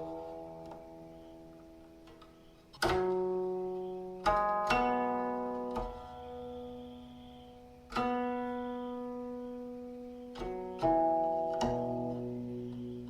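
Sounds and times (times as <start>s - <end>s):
plucked zither notes ringing: 0.0s - 13.0s.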